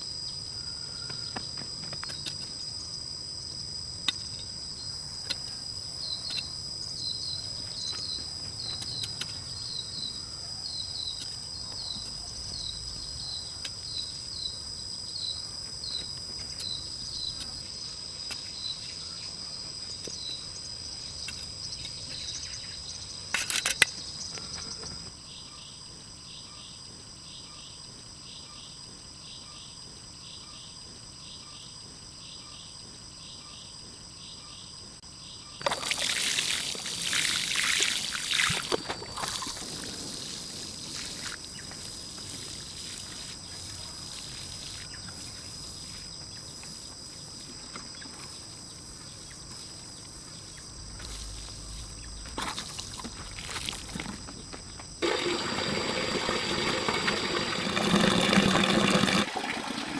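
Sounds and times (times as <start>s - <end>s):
crickets chirping: 0.0s - 59.9s.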